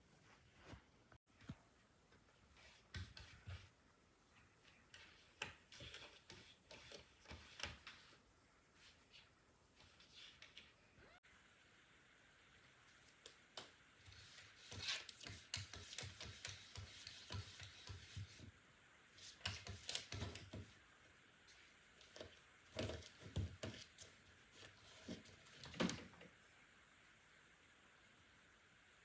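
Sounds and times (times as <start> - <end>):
cats rubbing and scratching: 2.2 - 10.9, 12.9 - 26.4.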